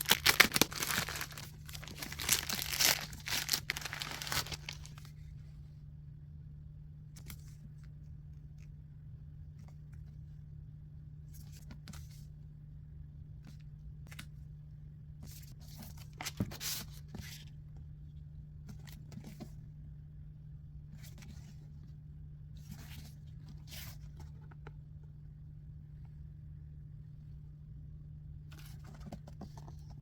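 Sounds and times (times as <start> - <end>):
packaging rustling and crinkling: 0.0 - 5.1
steady low hum: 17.4 - 30.0.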